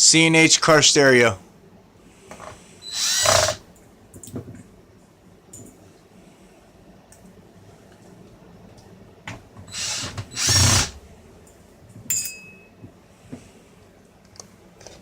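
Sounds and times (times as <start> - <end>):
cordless screwdriver driving screw: 2.9 - 3.6, 9.7 - 11.0
sharp metallic clink: 12.1 - 12.7.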